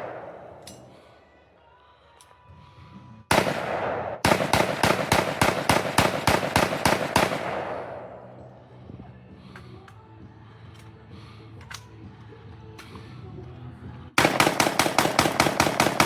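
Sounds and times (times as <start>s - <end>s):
rapid gunfire echoing: 0.0s - 1.4s, 3.3s - 8.7s, 14.2s - 16.0s.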